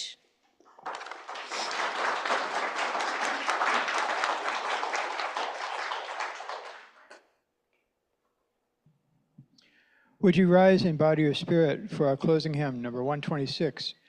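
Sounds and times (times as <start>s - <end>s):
crowd applauding: 0.6s - 7.2s.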